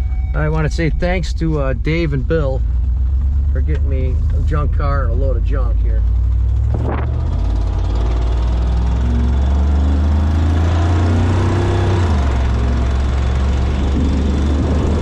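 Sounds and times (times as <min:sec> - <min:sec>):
truck engine droning: 0:00.0 - 0:15.0.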